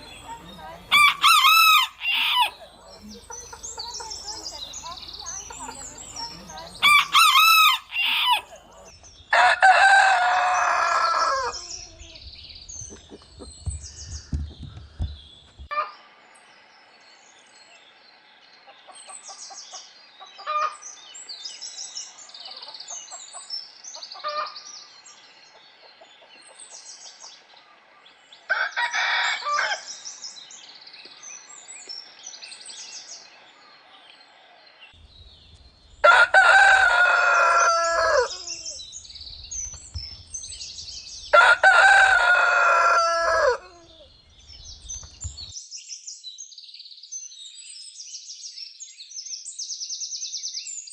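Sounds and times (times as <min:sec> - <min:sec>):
rooster crowing: 0:00.0 - 0:02.8, 0:06.0 - 0:11.8, 0:28.5 - 0:29.9, 0:36.0 - 0:38.8, 0:41.3 - 0:44.1
small bird chirps: 0:37.6 - 0:41.4, 0:43.6 - 0:50.9.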